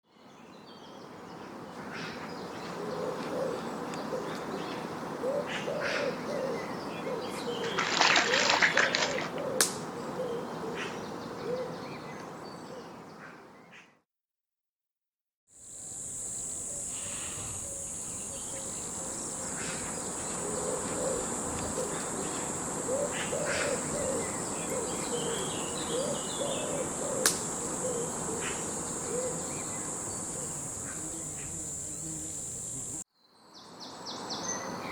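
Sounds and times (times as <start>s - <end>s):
insects: 0.2s - 12.4s, 15.5s - 34.9s
bird calls: 1.7s - 14.0s, 16.5s - 33.0s
high-pitched insect drone: 25.0s - 33.0s.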